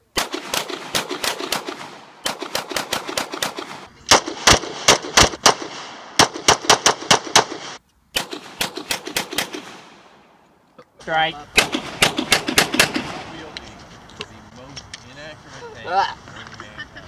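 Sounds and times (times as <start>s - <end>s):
pistol shots echoing: 0.1s - 10.1s, 11.6s - 13.3s.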